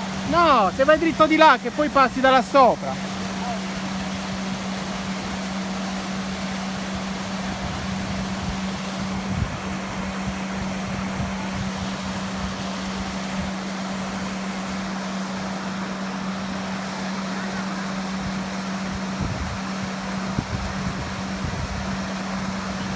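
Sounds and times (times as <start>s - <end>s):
wind buffeting microphone: 3.2s - 14.9s, 17.9s - 22.9s.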